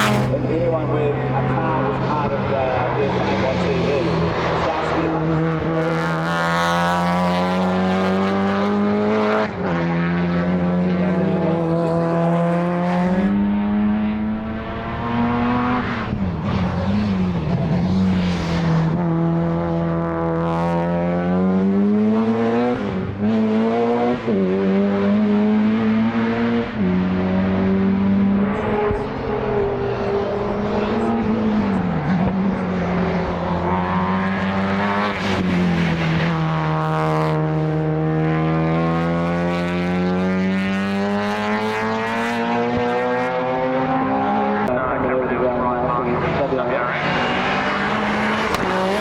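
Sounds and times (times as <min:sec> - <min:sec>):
race car engine accelerating: 0:00.0 - 0:49.0.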